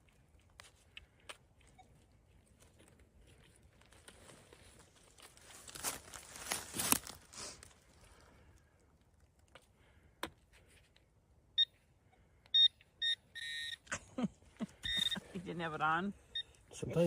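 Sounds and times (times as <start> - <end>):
crunching in leaf litter: 2.3 - 9.5
short electronic beeps: 11.6 - 13.8, 14.8 - 15.3.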